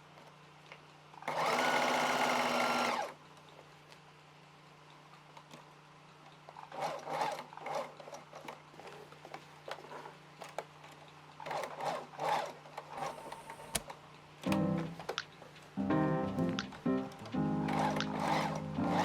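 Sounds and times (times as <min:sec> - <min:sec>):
sewing machine humming: 0:01.3 - 0:03.2, 0:11.4 - 0:13.9, 0:17.2 - 0:19.0
clicks: 0:13.2 - 0:15.7, 0:16.3 - 0:19.0
music: 0:14.4 - 0:15.2, 0:15.8 - 0:19.0.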